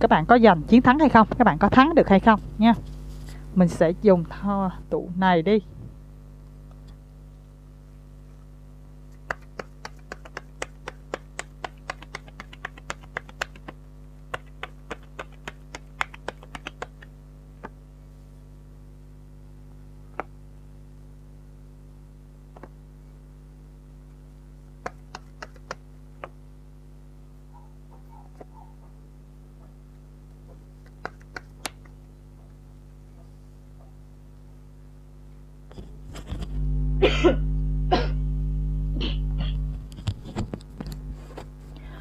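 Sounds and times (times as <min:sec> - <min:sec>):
low electrical hum: 0:00.0 - 0:42.0
cards clicking and tapping: 0:09.1 - 0:17.8, 0:24.8 - 0:26.4, 0:30.5 - 0:32.0.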